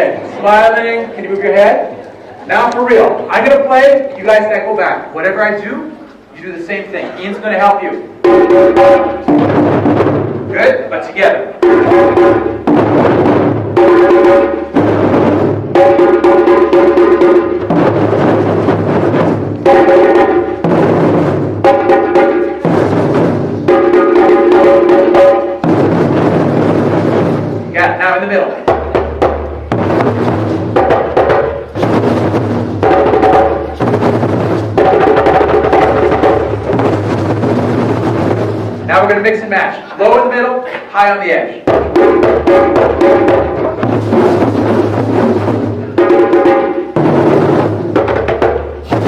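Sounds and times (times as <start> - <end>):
hand drums beating: 8.1 - 10.5, 11.5 - 28.0, 28.6 - 39.0, 41.6 - 49.0.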